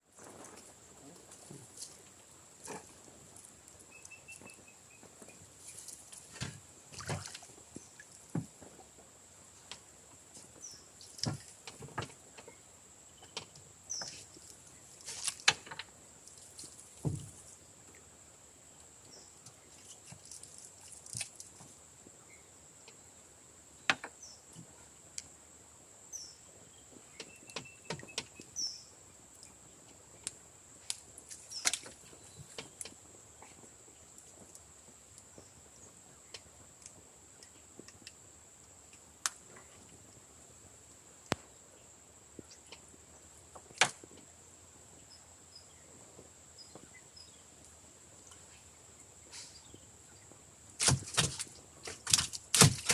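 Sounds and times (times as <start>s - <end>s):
water splashes: 5.7s - 8.9s, 50.8s - 52.9s.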